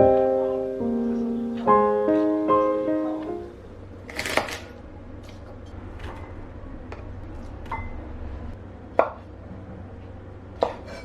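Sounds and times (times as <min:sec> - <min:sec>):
gentle piano chords: 0:00.0 - 0:03.9.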